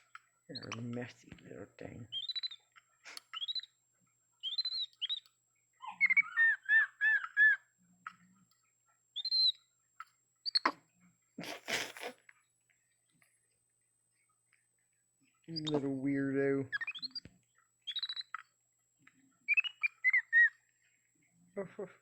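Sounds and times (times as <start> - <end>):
monkey chirping: 2.1 - 3.7, 4.4 - 8.2, 9.2 - 9.6, 10.4 - 10.8, 15.5 - 16.0, 16.7 - 18.5, 19.5 - 20.6.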